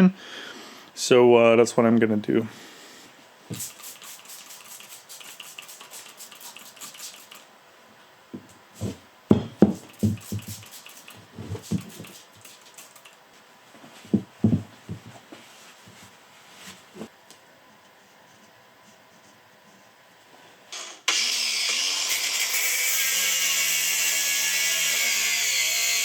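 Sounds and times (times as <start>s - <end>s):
dull knocks on workbench: 8.4s - 10.5s, 14.1s - 15.2s.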